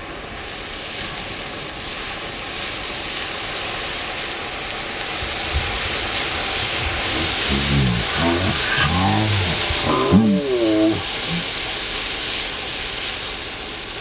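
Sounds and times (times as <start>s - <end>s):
firework fountain hissing: 0.0s - 14.0s.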